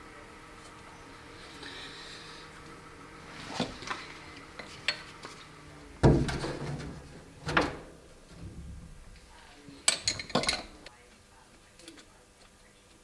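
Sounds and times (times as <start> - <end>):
metal tools clinking: 9.8 - 10.8.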